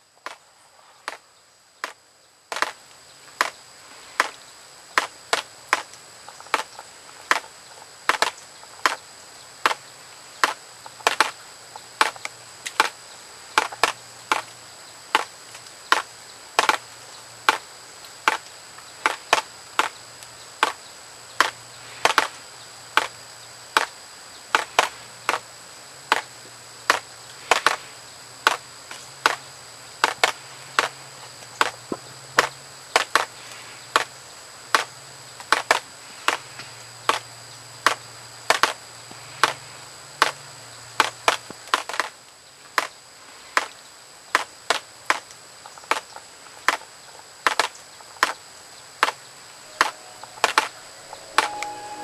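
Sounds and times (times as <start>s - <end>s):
high thin tones: 49.6s - 52.0s.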